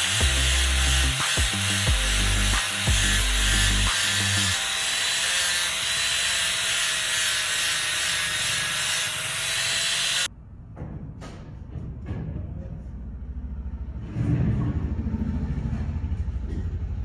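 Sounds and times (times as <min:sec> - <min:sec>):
power tool high hissing whine: 0:00.0 - 0:10.3.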